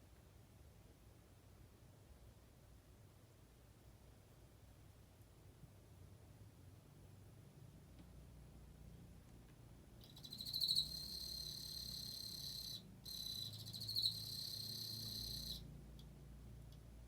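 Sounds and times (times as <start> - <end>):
cricket high pulsed trill: 10.0 - 15.6.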